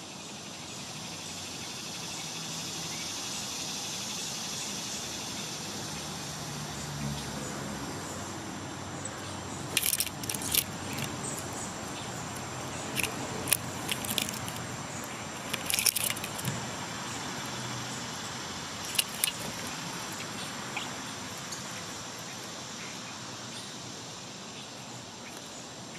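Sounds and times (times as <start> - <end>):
birds clicking and ticking: 9.0 - 23.9.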